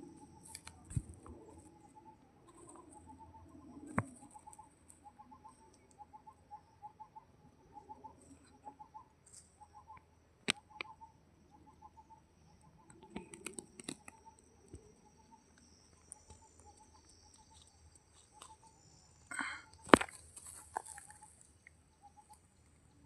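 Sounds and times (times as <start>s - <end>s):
sharp clicks: 12.9s - 14.9s.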